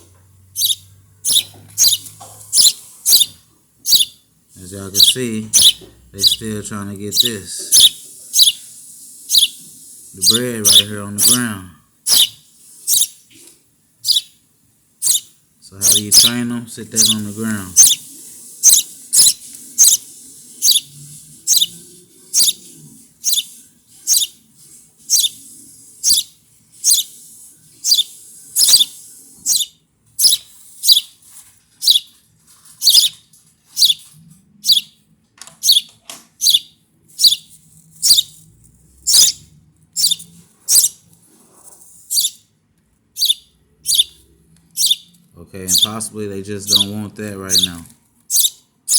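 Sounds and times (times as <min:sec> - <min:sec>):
baby birds chirping: 0:00.0 - 0:13.3, 0:14.0 - 0:14.4, 0:15.0 - 0:31.2, 0:31.8 - 0:35.0, 0:35.6 - 0:38.4, 0:39.0 - 0:41.0, 0:42.0 - 0:42.4, 0:43.2 - 0:48.9.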